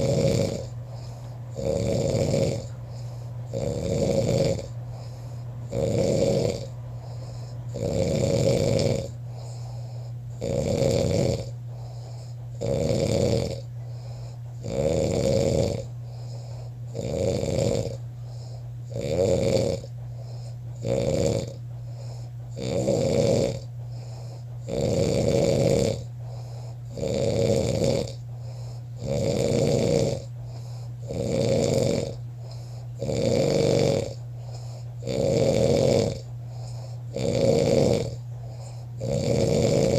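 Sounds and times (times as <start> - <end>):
man snoring: 0.0 - 39.9
low hum: 6.6 - 7.8.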